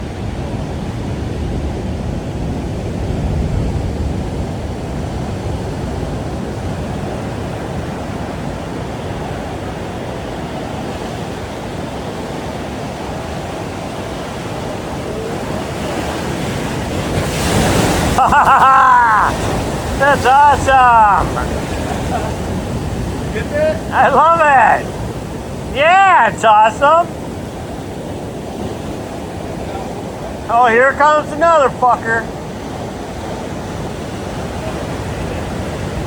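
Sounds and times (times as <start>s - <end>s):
ocean surf breaking on shore: 0.0s - 36.0s
wind buffeting microphone: 0.0s - 36.0s.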